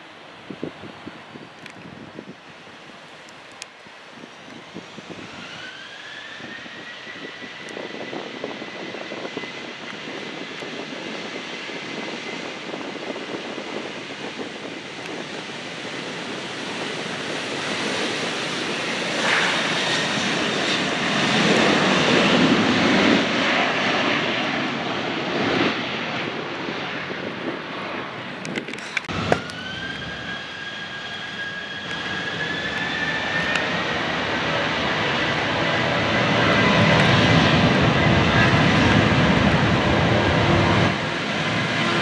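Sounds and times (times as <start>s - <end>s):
plane engine passing: 4.1s - 42.0s
whine rising in pitch: 29.1s - 41.0s.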